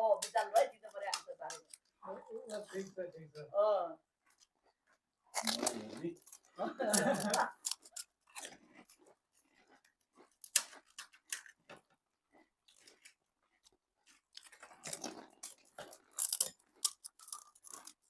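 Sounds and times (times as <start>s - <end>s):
crisp shells being chewed: 0.0s - 3.0s, 4.1s - 18.0s.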